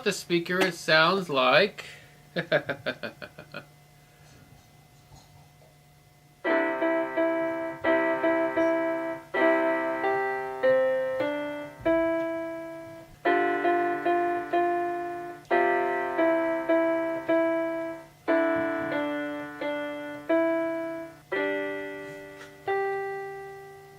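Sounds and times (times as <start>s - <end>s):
keyboard piano chords: 6.3s - 23.9s.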